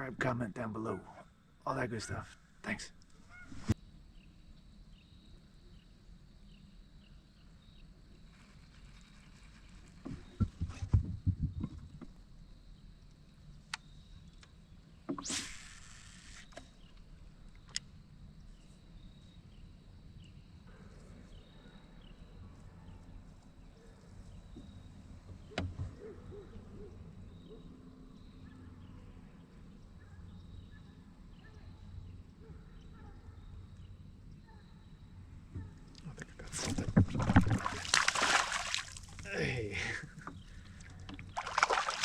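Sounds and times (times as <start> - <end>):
gear knocking in plastic kayak: 9.9 - 12.1.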